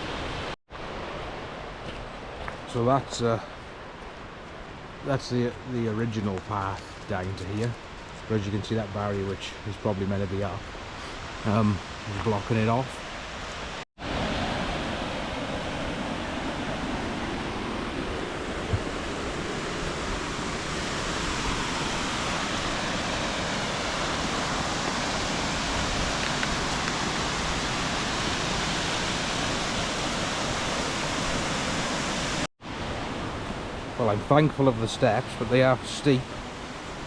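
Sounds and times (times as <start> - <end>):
waterfall rushing: 10.9 - 37.0.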